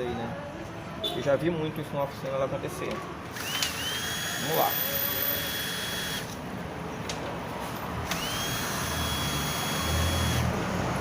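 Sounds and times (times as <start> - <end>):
cordless drill whine: 3.3 - 6.4, 8.1 - 10.5.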